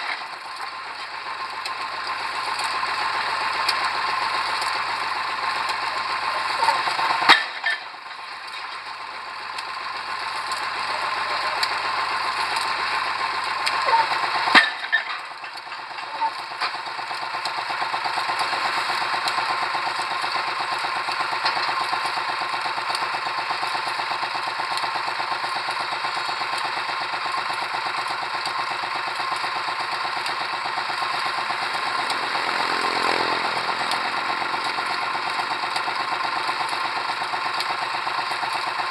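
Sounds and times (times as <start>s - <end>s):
pile driver mechanical chatter: 0.0s - 38.9s.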